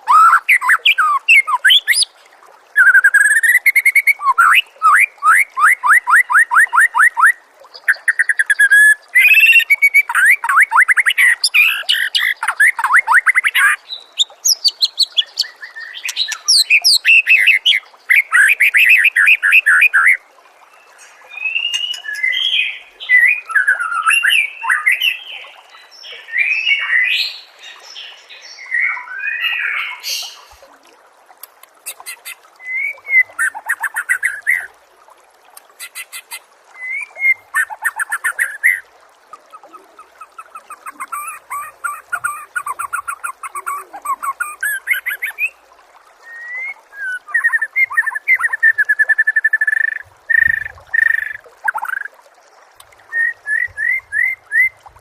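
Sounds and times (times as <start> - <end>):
bird whistling song: 0.1 - 2.1, 2.8 - 20.2, 21.3 - 25.2, 46.2 - 52.1, 53.1 - 54.8.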